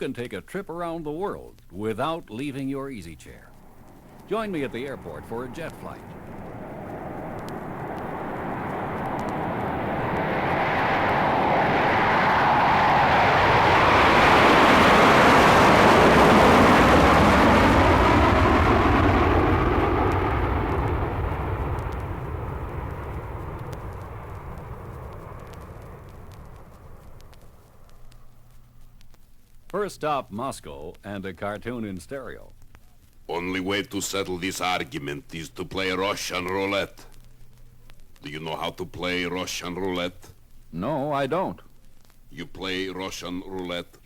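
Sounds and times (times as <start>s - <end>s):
jet aircraft passing by: 3.2s - 28.6s.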